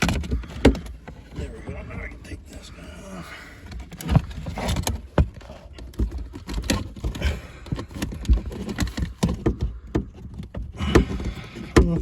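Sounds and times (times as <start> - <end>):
plastic car trim clicks and rattles: 0.0 - 1.4, 3.6 - 12.0.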